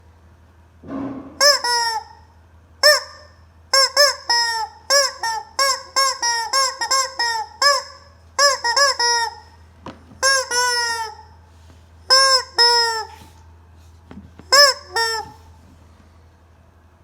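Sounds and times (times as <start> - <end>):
rubber chicken toy squawking: 1.4 - 9.6, 10.2 - 11.4, 12.1 - 13.4, 14.4 - 15.5.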